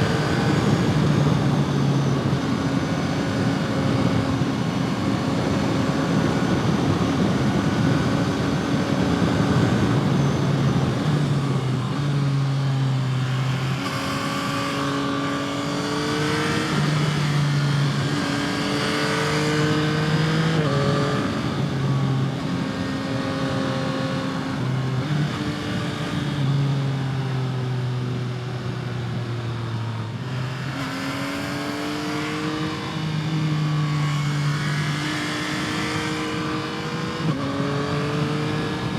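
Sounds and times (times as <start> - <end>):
wind noise: 0.0 - 26.9
motorcycle engine revving: 0.0 - 28.1, 29.8 - 38.9.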